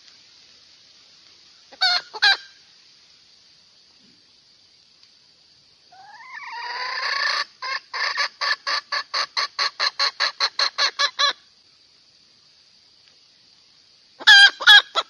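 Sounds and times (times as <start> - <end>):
hen cackling: 1.7 - 2.6, 5.9 - 11.4, 14.2 - 15.0.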